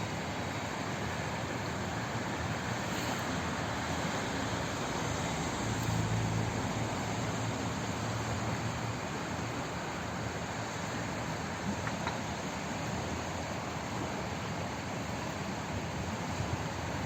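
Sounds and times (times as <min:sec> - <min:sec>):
water rushing: 0:00.0 - 0:17.0.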